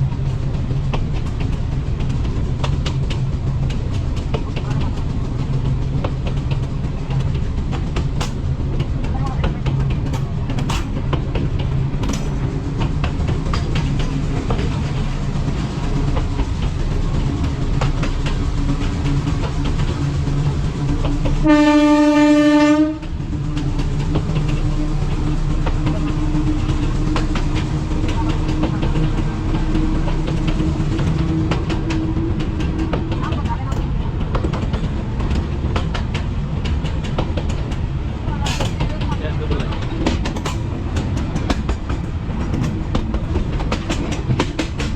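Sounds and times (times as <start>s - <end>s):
train rumbling on track: 0.0s - 44.9s
wheels clicking over rail joints: 0.0s - 44.9s
train horn: 21.4s - 23.1s.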